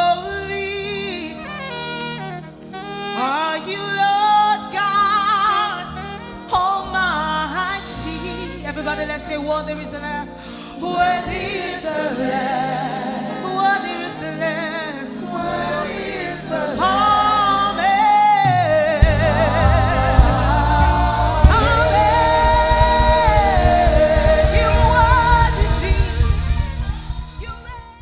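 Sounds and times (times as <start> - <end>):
gospel band playing: 0.0 - 28.0
singers holding wavering notes: 10.7 - 28.0
bass and drums: 18.6 - 28.0.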